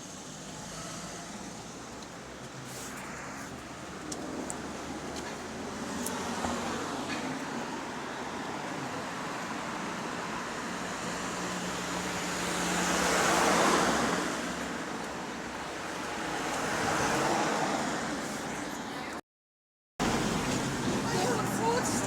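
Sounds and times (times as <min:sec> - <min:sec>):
road traffic rushing: 0:00.0 - 0:19.2, 0:20.0 - 0:22.0
bus engine humming: 0:20.0 - 0:22.0.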